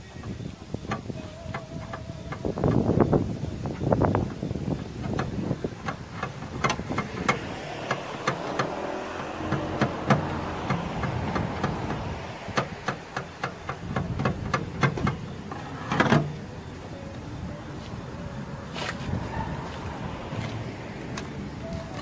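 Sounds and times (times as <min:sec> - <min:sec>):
hammer tapping on sheet metal: 0:05.1 - 0:15.2.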